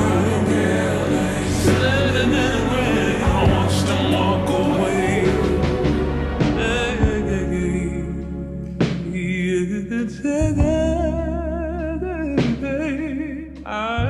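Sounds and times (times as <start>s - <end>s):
steady low bass: 0.0s - 14.0s.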